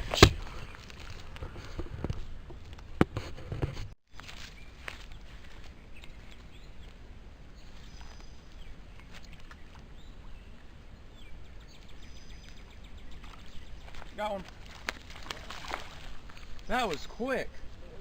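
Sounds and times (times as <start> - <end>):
birds chirping: 4.1 - 18.0.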